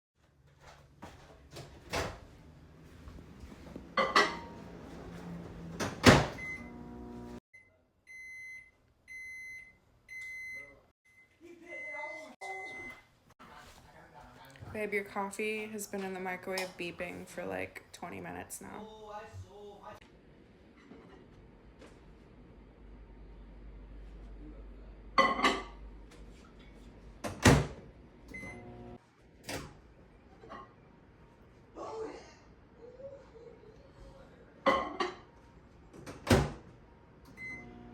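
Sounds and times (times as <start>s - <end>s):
microwave oven humming: 4.3s - 7.4s, 28.3s - 29.0s, 37.1s - 37.9s
microwave high beeps: 6.4s - 13.0s, 28.3s - 28.9s, 37.4s - 37.9s.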